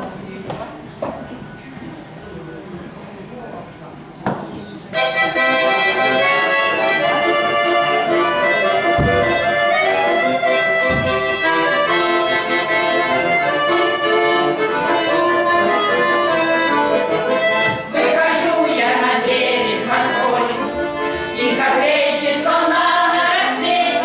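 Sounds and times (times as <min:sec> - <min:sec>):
accordion folk tune: 0:04.9 - 0:24.0.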